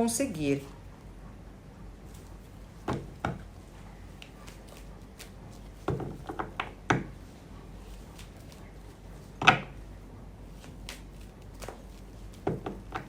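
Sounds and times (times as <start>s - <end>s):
cards rustling: 10.5s - 12.9s.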